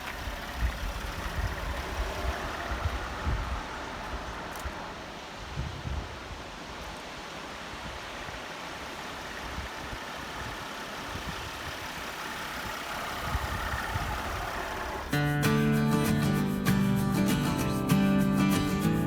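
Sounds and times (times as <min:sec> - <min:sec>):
acoustic guitar music: 0:15.1 - 0:19.0.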